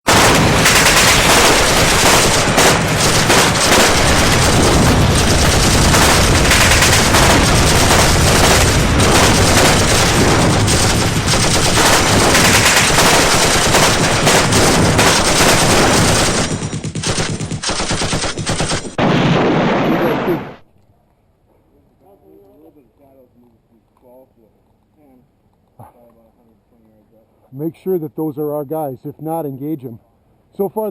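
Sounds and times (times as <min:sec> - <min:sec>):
rapid automatic gunfire: 0:00.1 - 0:20.6.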